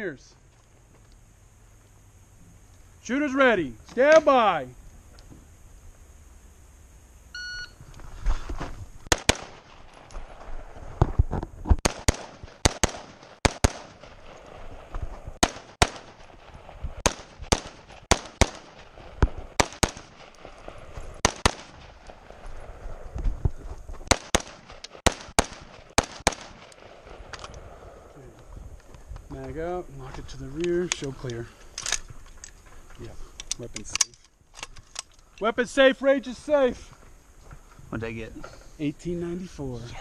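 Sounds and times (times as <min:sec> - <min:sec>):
shot timer beep: 0:07.4 - 0:07.8
rifle firing: 0:09.1 - 0:10.0, 0:11.8 - 0:14.6, 0:15.4 - 0:16.4, 0:17.0 - 0:22.2, 0:24.1 - 0:27.4.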